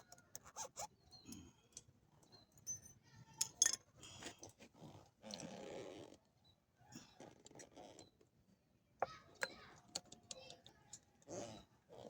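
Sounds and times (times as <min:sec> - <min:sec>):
light metallic clinks and knocks: 0:01.3 - 0:04.5.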